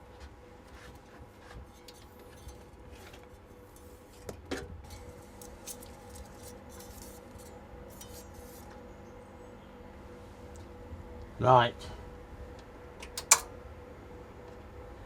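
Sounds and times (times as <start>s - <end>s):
faint electrical hum: 0.0s - 15.0s
hardware clicking and knocking: 13.1s - 13.5s.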